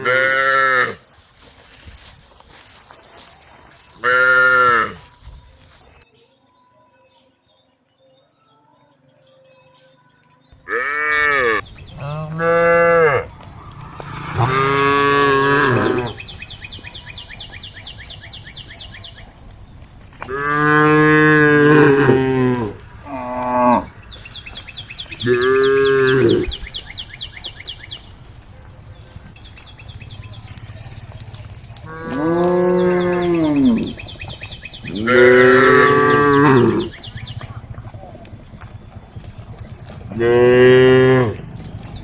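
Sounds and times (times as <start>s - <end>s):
cows mooing: 10.6s - 16.3s, 20.3s - 24.0s, 25.2s - 26.6s, 31.8s - 34.1s, 34.9s - 37.0s, 40.0s - 42.0s.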